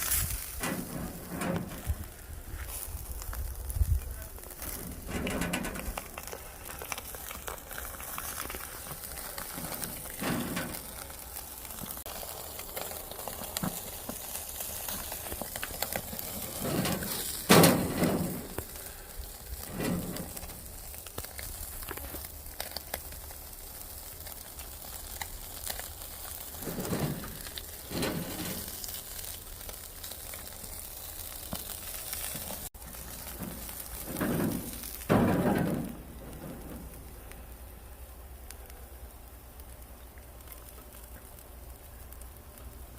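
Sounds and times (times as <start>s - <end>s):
burning wood crackling: 0.0s - 42.9s
fish sizzling on grill: 0.0s - 42.9s
knocks and clatters: 0.6s - 2.1s, 4.6s - 7.0s, 9.5s - 11.0s, 16.5s - 18.7s, 19.7s - 20.6s, 26.6s - 28.8s, 33.2s - 37.2s.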